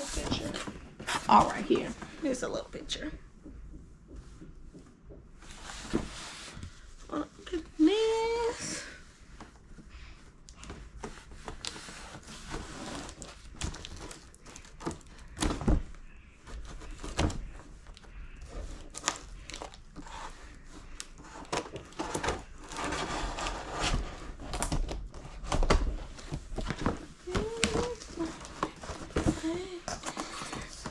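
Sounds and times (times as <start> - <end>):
knocks and taps: 3.4 - 5.4
packaging crinkling and rustling: 10.9 - 15.7, 16.5 - 30.9.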